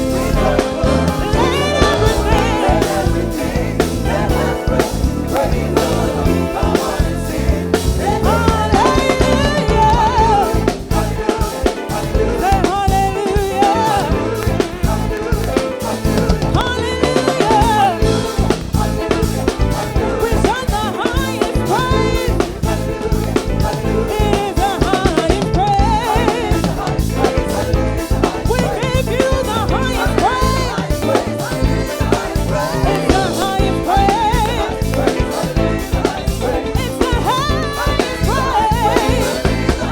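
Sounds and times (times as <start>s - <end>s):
drum kit beat: 0.0s - 39.9s
worship song with band: 0.0s - 39.9s.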